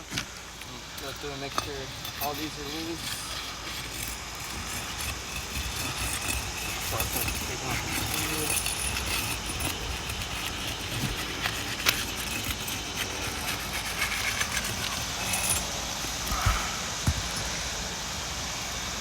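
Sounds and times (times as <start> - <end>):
steady outdoor hiss: 0.0 - 19.0
hand tools clinking on metal: 0.1 - 17.5.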